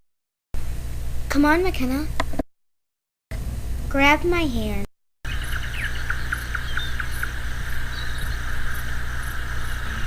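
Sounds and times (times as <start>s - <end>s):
steady low hum: 3.3s - 10.0s
crickets chirping: 5.3s - 10.0s
pulsing insect trills: 5.3s - 10.0s.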